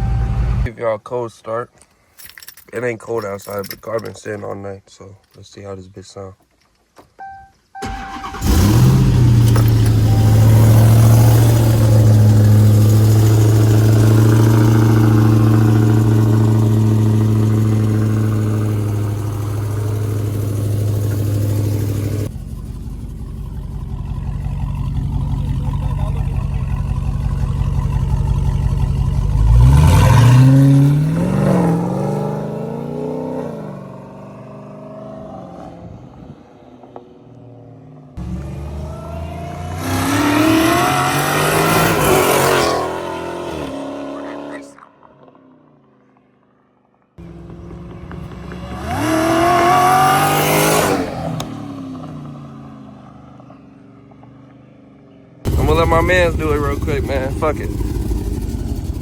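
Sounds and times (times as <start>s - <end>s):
car engine starting and idling: 0.0s - 0.7s, 7.2s - 54.7s, 55.4s - 59.0s
engine revving: 7.8s - 36.4s, 37.5s - 44.8s, 47.2s - 52.2s, 55.5s - 59.0s.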